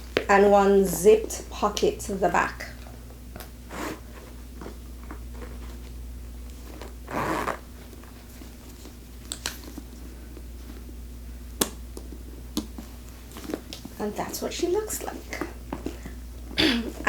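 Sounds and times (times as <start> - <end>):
low steady hum: 0.0 - 17.0
handbag handling: 6.6 - 10.0.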